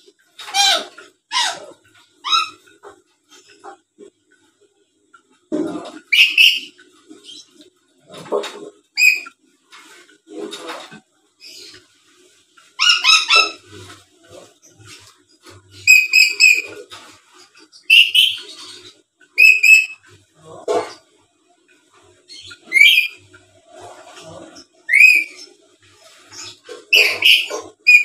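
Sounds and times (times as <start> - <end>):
parrot squawking and whistling: 0.4 - 2.6, 6.1 - 6.8, 9.0 - 9.3, 12.8 - 13.7, 15.8 - 16.8, 17.9 - 18.6, 19.4 - 20.0, 22.4 - 23.2, 24.8 - 25.5, 26.4 - 28.0
parrot chattering: 0.4 - 2.8, 5.8 - 6.8, 9.0 - 9.3, 12.8 - 13.7, 15.8 - 16.8, 17.9 - 18.5, 19.4 - 20.0, 22.5 - 23.2, 24.4 - 25.4, 26.4 - 28.0.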